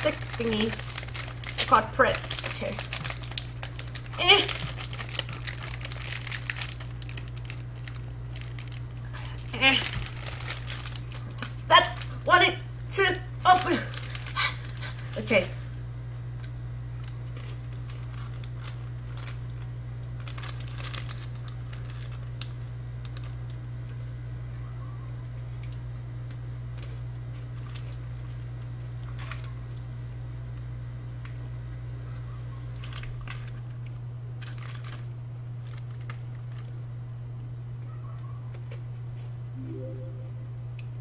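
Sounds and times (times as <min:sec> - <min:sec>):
low electrical hum: 0:00.0 - 0:41.0
crinkles and clicks of handling: 0:16.3 - 0:24.0, 0:25.6 - 0:29.8, 0:32.8 - 0:36.7.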